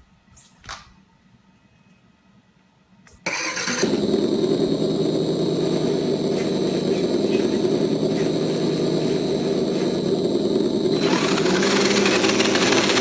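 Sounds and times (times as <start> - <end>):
engine running: 3.3 - 13.0
simulated engine start: 3.3 - 13.0.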